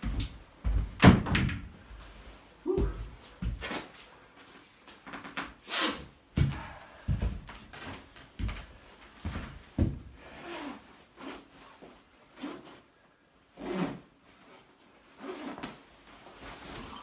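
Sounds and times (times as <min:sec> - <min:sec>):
scrapes and rustles: 0:13.6 - 0:17.0.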